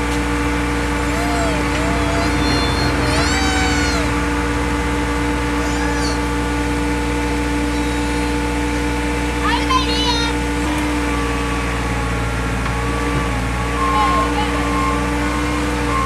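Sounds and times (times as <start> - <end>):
heavy machinery engine running: 0.0 - 16.0
gliding squeals: 0.9 - 8.9, 13.6 - 16.0.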